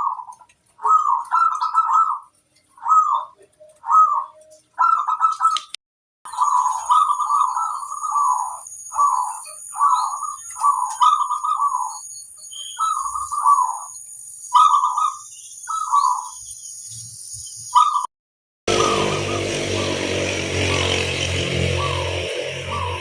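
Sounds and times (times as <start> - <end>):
dove cooing: 0.0 - 5.7, 6.3 - 12.0, 12.8 - 13.9, 14.6 - 16.4, 18.7 - 23.0
steady high-pitched whine: 18.7 - 23.0.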